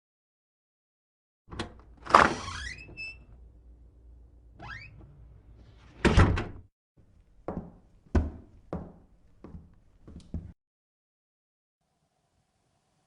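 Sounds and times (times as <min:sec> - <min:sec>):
door creaking open: 0:01.5 - 0:03.4, 0:04.6 - 0:06.6
door banging shut: 0:05.9 - 0:06.6.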